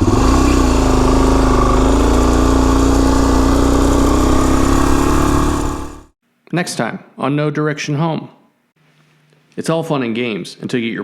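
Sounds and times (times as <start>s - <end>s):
motorcycle engine running: 0.0s - 6.2s.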